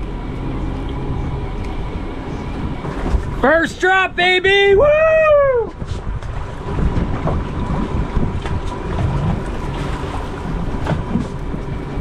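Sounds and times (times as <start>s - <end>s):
boat engine low rumble: 0.0s - 12.0s
wind buffeting microphone: 0.0s - 12.0s.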